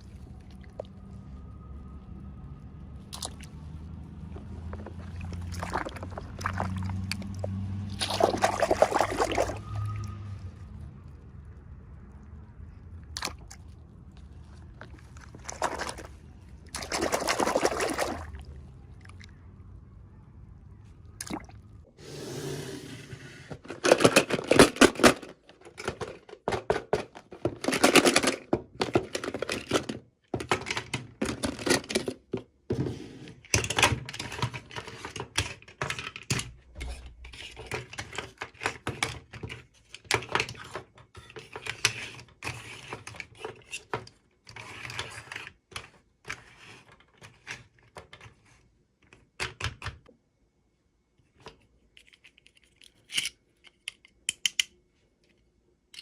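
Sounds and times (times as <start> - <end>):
plastic toy pieces clicking: 52.0 - 54.8.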